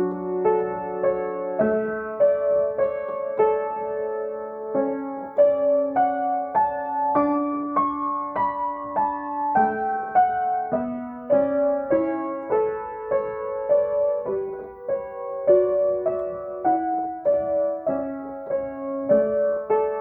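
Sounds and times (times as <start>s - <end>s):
slow gentle piano notes: 0.0s - 20.0s.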